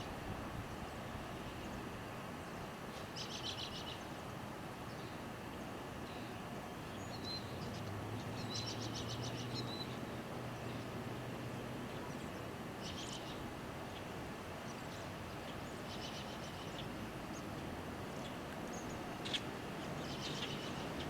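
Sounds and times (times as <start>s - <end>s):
small birds chirping: 12.0s - 21.0s.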